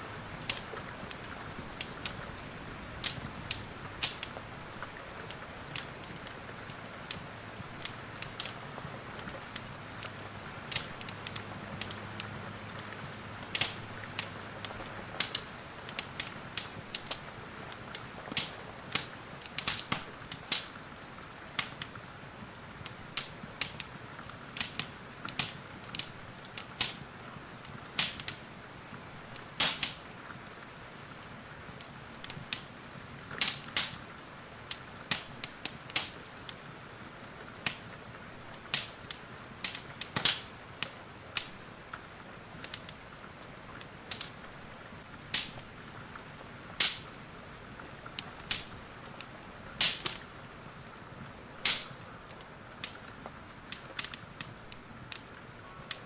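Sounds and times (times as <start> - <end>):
rain hiss: 0.0 - 56.0
wood fire crackling and popping: 0.2 - 56.0.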